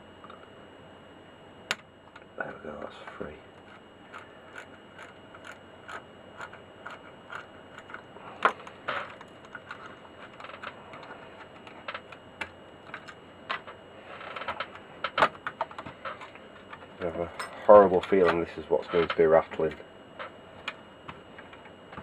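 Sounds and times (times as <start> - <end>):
small tools clicking and tapping: 3.6 - 18.4.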